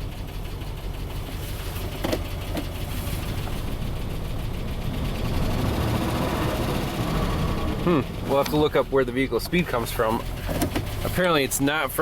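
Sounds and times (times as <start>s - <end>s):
misfiring engine idling: 0.0s - 12.0s
tapping under the hood: 1.0s - 4.1s, 10.1s - 11.2s.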